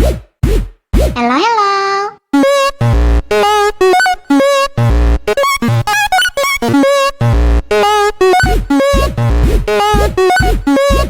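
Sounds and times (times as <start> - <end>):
choppy electronic music stabs: 2.4 - 11.0.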